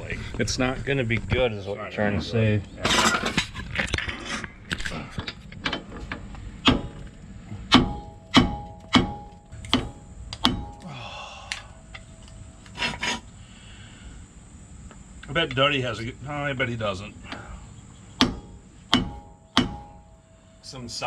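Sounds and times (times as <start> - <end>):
tools knocking on metal nut: 7.7 - 10.9, 18.2 - 20.1.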